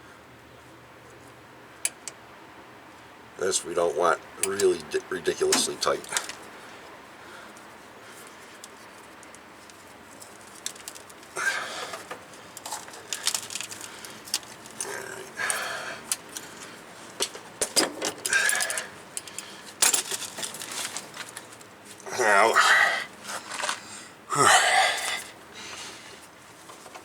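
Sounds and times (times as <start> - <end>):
metal hand tools clinking: 17.7 - 20.8.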